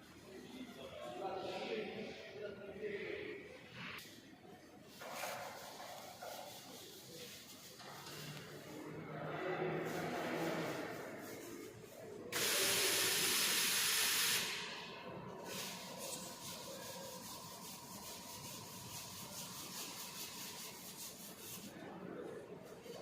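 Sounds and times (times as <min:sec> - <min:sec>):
loud hiss of escaping air: 0:12.4 - 0:14.9.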